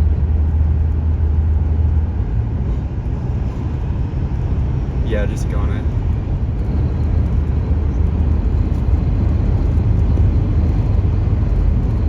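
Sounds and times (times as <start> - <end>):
wind buffeting microphone: 5.8 - 12.0.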